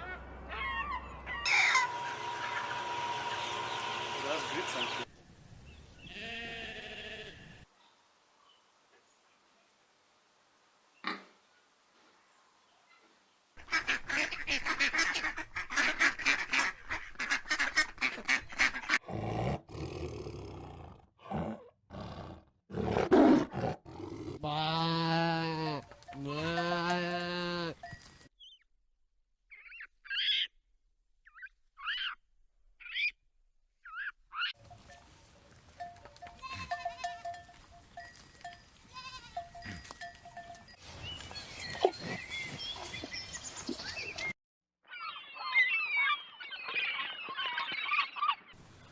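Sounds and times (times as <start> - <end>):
long drawn-out bleats: 6.1 - 7.7, 24.4 - 27.8, 36.4 - 37.3.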